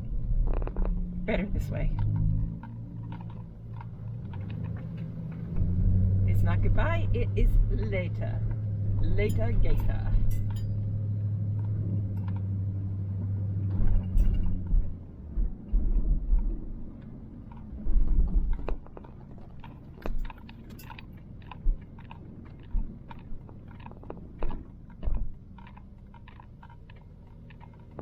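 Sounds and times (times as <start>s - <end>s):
low thumps and clicks: 0.0s - 28.0s
van engine hum: 0.0s - 28.0s.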